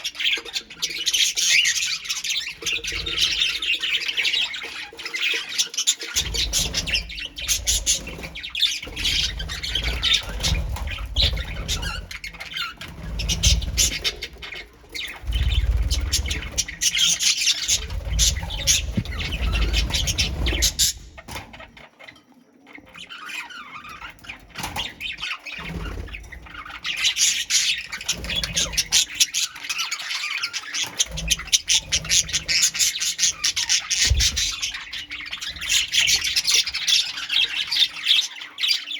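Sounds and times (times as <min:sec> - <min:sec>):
birds chattering and squawking: 0:00.0 - 0:38.9
low rumbling noise: 0:17.7 - 0:21.2.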